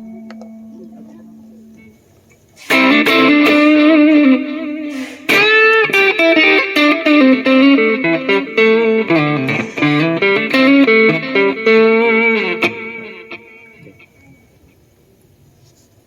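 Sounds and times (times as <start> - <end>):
electric guitar lead solo: 2.6 - 14.4.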